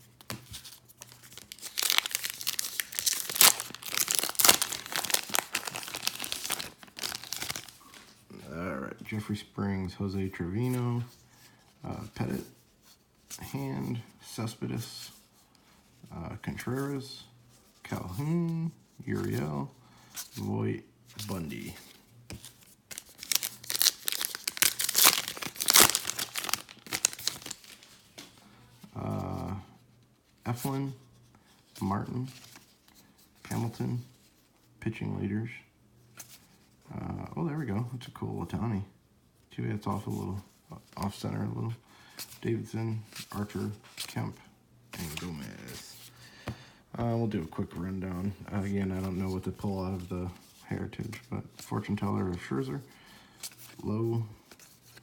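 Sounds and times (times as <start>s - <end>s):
foil wrapper tearing and crinkling: 1.1s - 7.8s, 22.9s - 28.0s.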